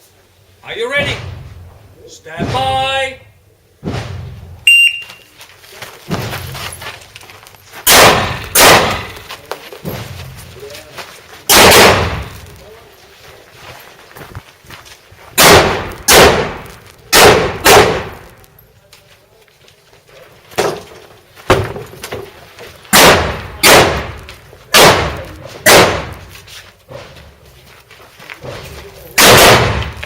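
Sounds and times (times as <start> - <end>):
rifle shots: 7.9 - 9.3, 11.5 - 12.4, 15.4 - 18.4, 22.9 - 26.3, 29.2 - 30.0.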